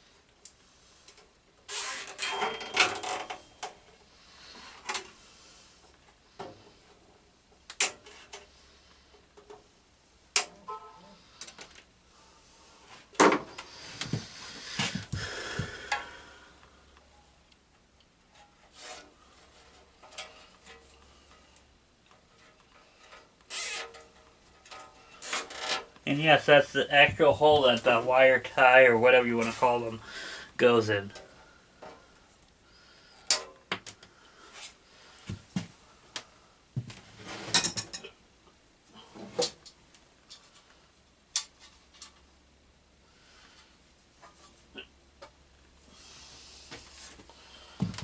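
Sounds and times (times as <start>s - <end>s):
cable ties rasping: 18.6s - 26.0s.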